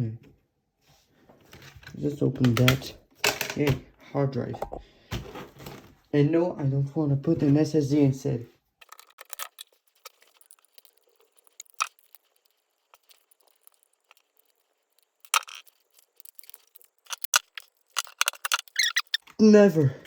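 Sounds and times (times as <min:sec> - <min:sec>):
laptop parts clicking and rattling: 0:08.8 - 0:19.4.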